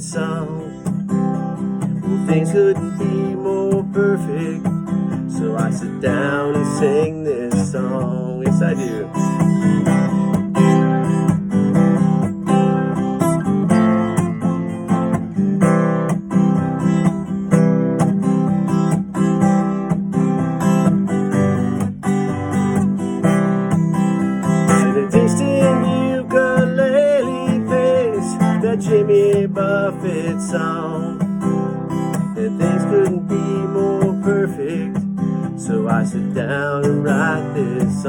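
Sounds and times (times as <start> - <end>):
acoustic guitar strumming: 0.0 - 38.0.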